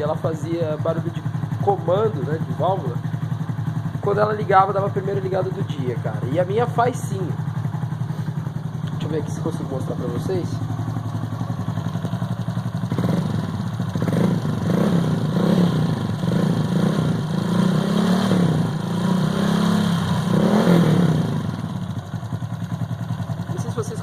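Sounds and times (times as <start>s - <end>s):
motorcycle engine revving: 0.0s - 24.0s
engine valve ticking: 7.5s - 9.3s.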